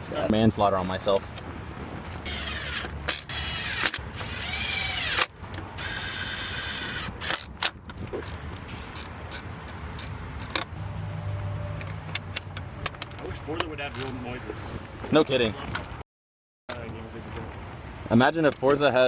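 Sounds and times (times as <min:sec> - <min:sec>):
engine revving: 0:10.6 - 0:12.7.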